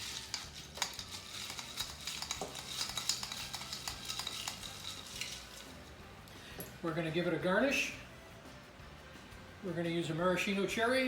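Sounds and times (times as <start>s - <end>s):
ice clinking in a glass: 0.0s - 5.9s.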